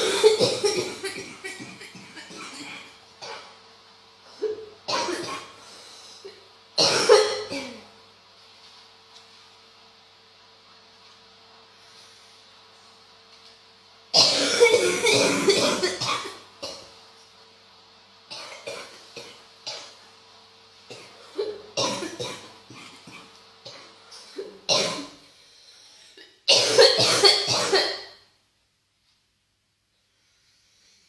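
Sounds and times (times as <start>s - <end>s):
person coughing hard: 0.0s - 3.5s, 4.4s - 5.6s, 6.8s - 7.9s, 14.2s - 16.9s, 18.3s - 20.0s, 20.9s - 25.2s, 26.2s - 28.2s.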